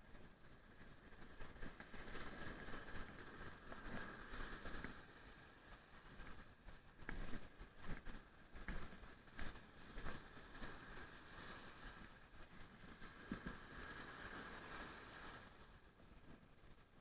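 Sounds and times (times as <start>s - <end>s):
surf hissing: 13.0s - 15.8s.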